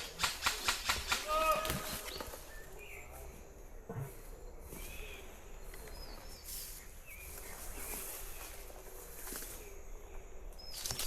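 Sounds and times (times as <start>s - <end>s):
bird chirps: 0.0s - 3.5s, 4.1s - 11.0s
steady background noise: 0.0s - 11.0s.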